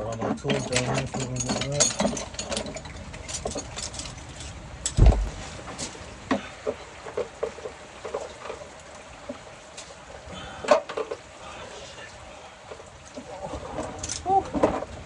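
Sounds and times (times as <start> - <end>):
short knocks and clinks: 0.0 - 5.4
rain hiss: 0.5 - 15.0.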